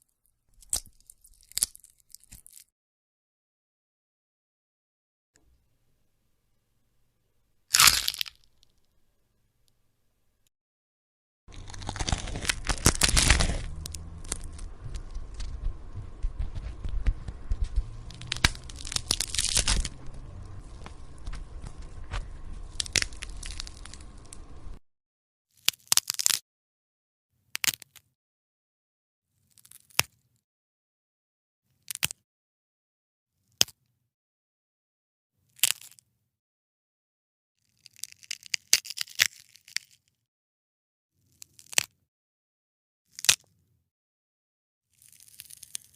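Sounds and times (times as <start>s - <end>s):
bones cracking and crunching: 0.5s - 2.7s, 7.7s - 8.7s, 11.5s - 24.8s, 25.6s - 26.4s, 27.6s - 28.0s, 31.8s - 32.2s, 37.7s - 40.0s, 41.3s - 41.9s, 43.1s - 43.5s, 45.0s - 45.9s
low hum: 11.5s - 24.8s.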